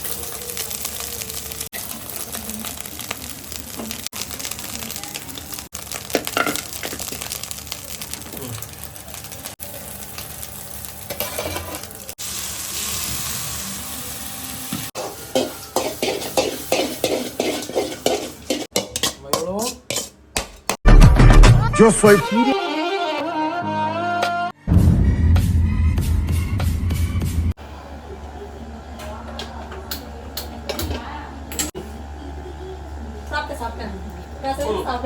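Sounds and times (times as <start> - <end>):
food sizzling in a pan: 0.0 - 20.2.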